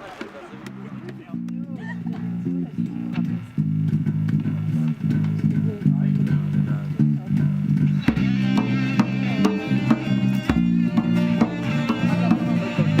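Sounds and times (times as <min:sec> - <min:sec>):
bass guitar bass line: 0:00.6 - 0:13.0
instruments with wavering high notes: 0:08.0 - 0:13.0.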